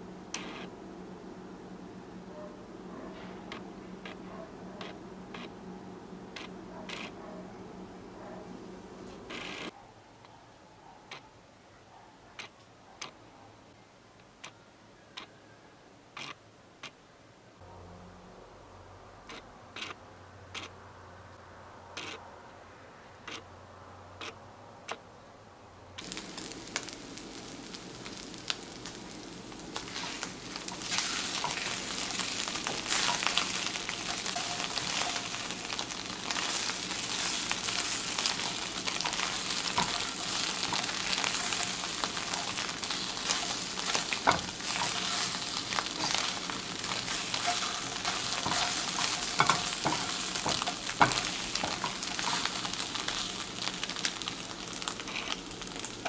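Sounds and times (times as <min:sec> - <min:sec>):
food sizzling in hot oil: 0:26.0 - 0:56.0.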